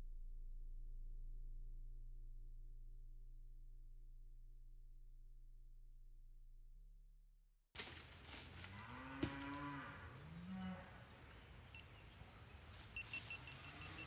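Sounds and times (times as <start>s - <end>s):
cow mooing: 8.6s - 11.1s, 13.5s - 14.0s
faint electronic tone: 11.0s - 14.0s.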